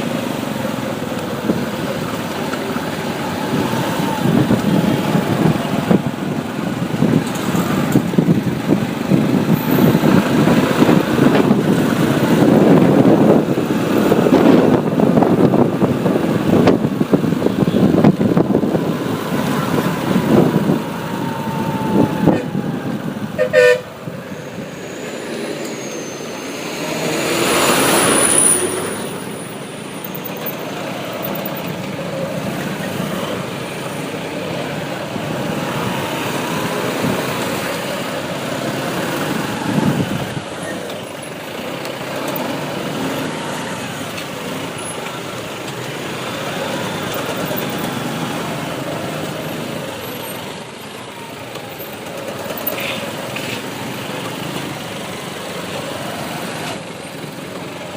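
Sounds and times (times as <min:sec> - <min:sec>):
road traffic noise: 0:00.0 - 0:57.9
vehicle passing close: 0:18.2 - 0:44.8
vehicle horn: 0:23.3 - 0:24.1.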